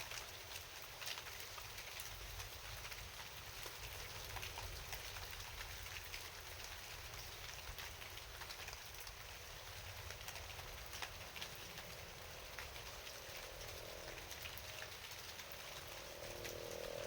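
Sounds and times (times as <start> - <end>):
steady rain falling: 0.0 - 17.0.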